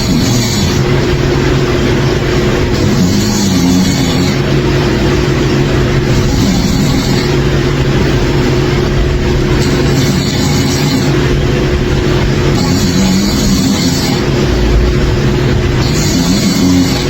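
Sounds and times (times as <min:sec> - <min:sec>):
person snoring loudly: 0:00.0 - 0:00.8, 0:02.8 - 0:04.4, 0:15.8 - 0:17.0
steady background hum: 0:00.0 - 0:17.0.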